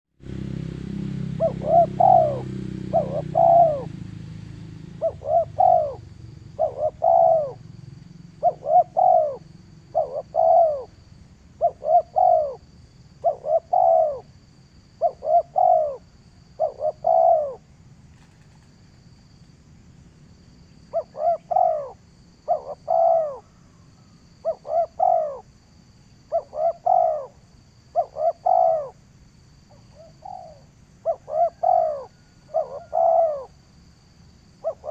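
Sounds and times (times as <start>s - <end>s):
dove cooing: 1.3s - 14.3s, 15.0s - 18.6s, 20.9s - 23.7s, 24.4s - 25.5s, 26.3s - 29.0s, 29.7s - 33.6s, 34.6s - 34.9s.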